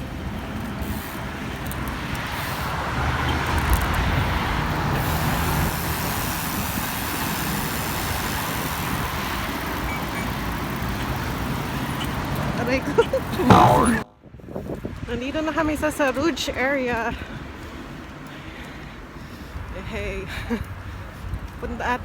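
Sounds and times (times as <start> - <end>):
rushing road noise: 0.0 - 14.0, 16.3 - 22.0
vehicle passing: 9.1 - 14.0.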